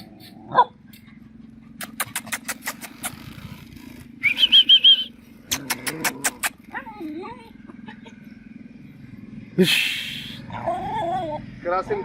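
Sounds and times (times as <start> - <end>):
dog yelping: 0.0 - 3.3, 10.4 - 11.5
sharp clicks: 1.8 - 3.3.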